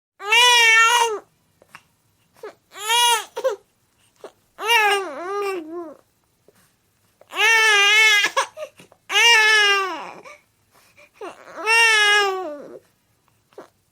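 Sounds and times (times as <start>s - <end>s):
baby crying: 0.2s - 1.3s, 2.4s - 3.6s, 4.6s - 6.0s, 7.3s - 10.4s, 11.2s - 12.8s.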